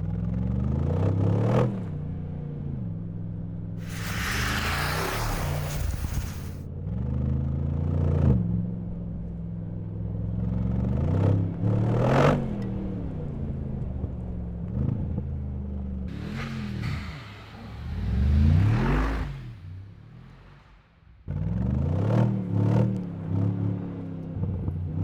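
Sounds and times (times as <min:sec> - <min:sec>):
car engine revving: 0:03.8 - 0:06.6, 0:15.8 - 0:24.2
sharp exhaust crack: 0:03.8 - 0:06.6, 0:16.1 - 0:20.9.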